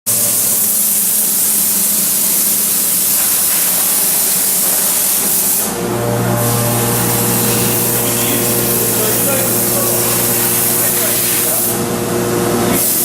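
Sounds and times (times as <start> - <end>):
milling machine hiss: 0.1 - 13.0
motor hum with whine: 5.6 - 13.0.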